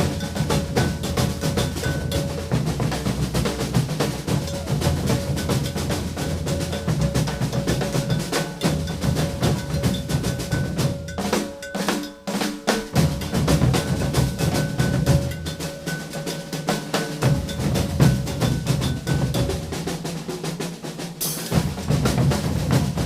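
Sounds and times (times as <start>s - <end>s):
ringing bell: 0.0s - 3.2s, 4.2s - 19.6s
deep bass drums: 0.0s - 11.2s, 13.0s - 15.8s, 17.2s - 20.0s, 21.5s - 23.0s
snare drums: 0.0s - 23.0s.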